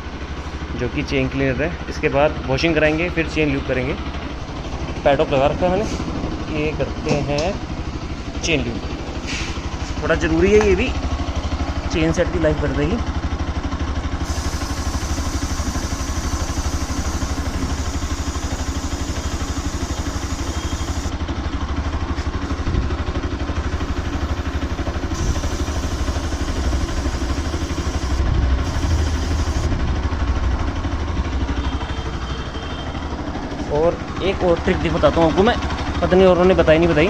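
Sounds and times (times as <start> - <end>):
engine idling: 0.0 - 37.0.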